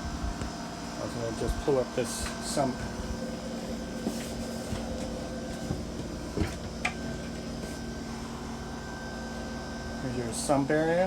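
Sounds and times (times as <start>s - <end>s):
steady hum: 0.0s - 11.0s.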